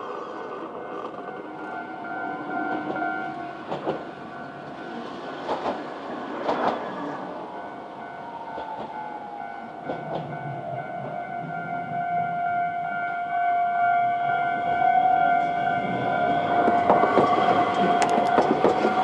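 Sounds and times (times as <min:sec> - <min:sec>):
crossing warning bell ringing: 0:00.4 - 0:19.0
tram wheels clacking over rail joints: 0:02.7 - 0:07.5, 0:16.6 - 0:19.0.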